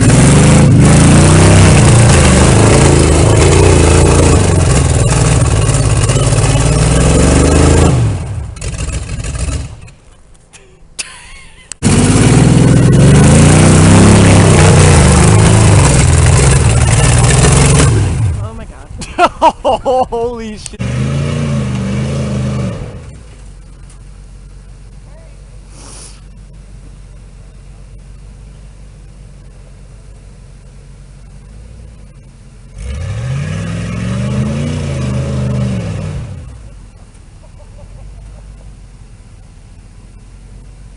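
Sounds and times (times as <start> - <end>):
loud engine revving: 0.0 - 9.9, 11.8 - 18.6, 20.7 - 23.4, 32.7 - 36.8.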